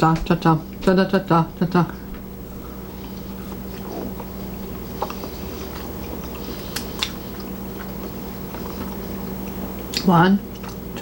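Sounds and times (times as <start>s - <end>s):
steady low hum: 0.0s - 11.0s
person chewing food: 2.5s - 11.0s.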